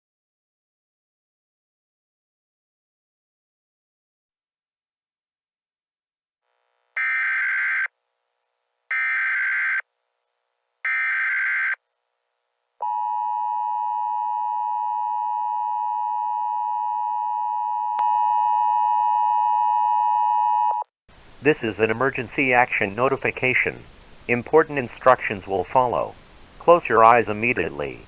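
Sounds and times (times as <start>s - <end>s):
alert header data bursts: 21.4s - 28.0s.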